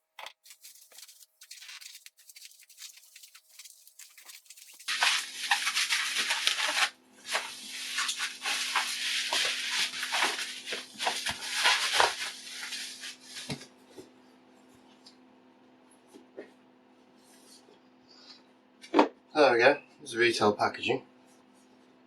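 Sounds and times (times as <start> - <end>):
bubble wrap crinkling: 0.0 - 13.6.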